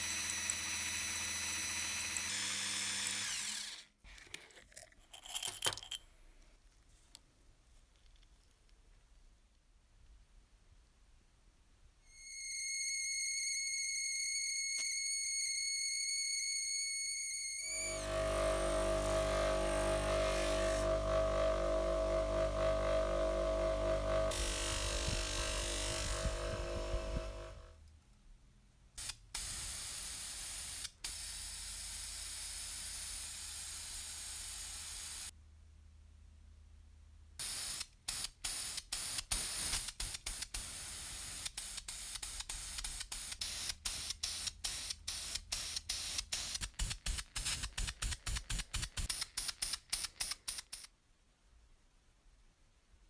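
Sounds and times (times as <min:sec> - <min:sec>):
multi-tone hum: 0:17.6 - 0:27.7
compressed air spraying: 0:37.4 - 0:50.9.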